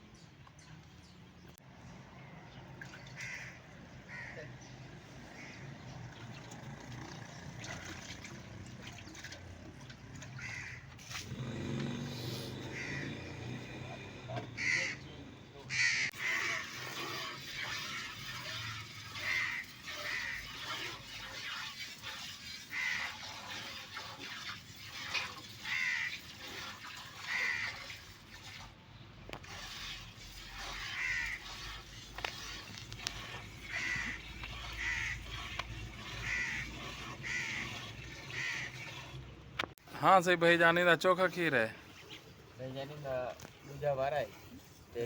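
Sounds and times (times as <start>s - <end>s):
birds calling: 10.4s - 11.0s, 11.9s - 13.8s, 14.4s - 16.6s, 33.0s - 38.9s.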